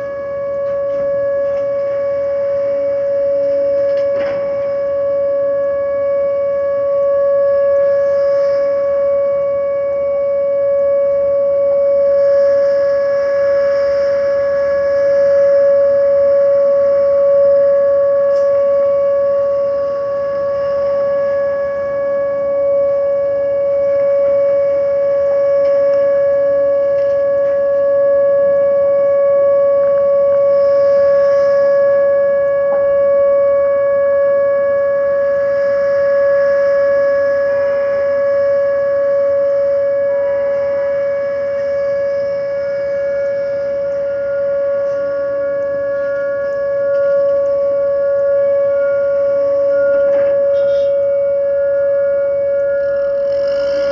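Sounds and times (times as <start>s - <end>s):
warning siren steady tone: 0.0s - 53.9s.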